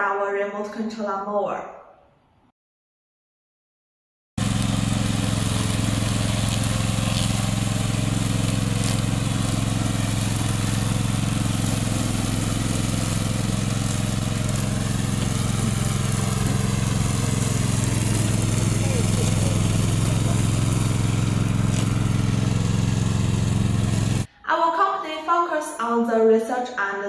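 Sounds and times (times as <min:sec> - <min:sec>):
lawn mower engine running: 0:04.4 - 0:24.3.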